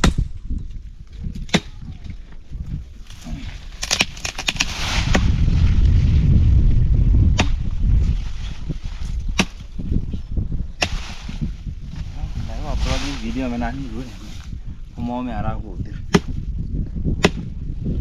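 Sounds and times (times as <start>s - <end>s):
blade chopping wood: 3.8s - 5.3s, 7.3s - 7.6s, 16.1s - 16.3s, 17.2s - 17.5s
loud low rumble: 4.8s - 9.0s.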